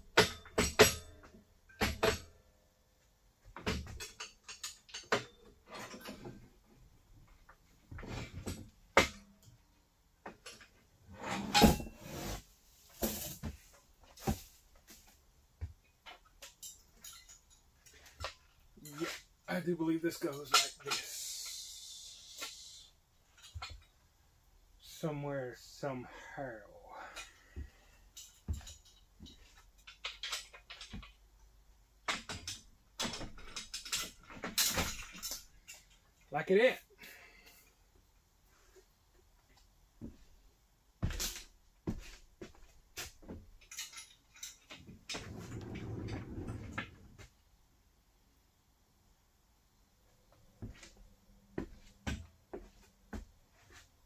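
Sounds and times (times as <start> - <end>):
metal parts clanking: 3.6 - 6.4, 16.0 - 19.3, 20.2 - 21.7, 27.1 - 31.2, 32.0 - 36.1, 43.6 - 46.8.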